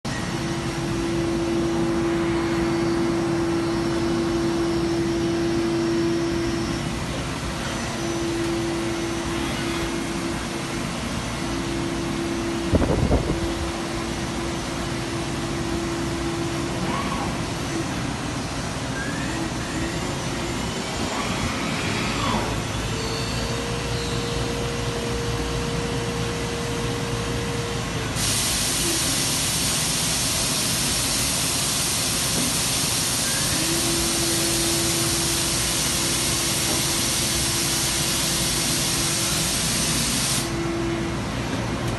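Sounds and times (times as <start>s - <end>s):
machine humming: 0.1s - 28.3s
loud steady hiss: 27.9s - 40.9s.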